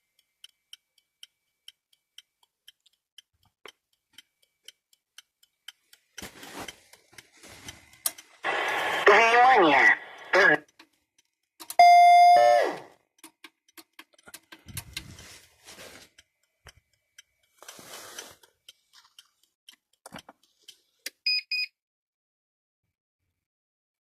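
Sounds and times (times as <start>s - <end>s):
short high beeps: 11.8s - 12.8s
fire alarm warning tone: 11.8s - 12.9s.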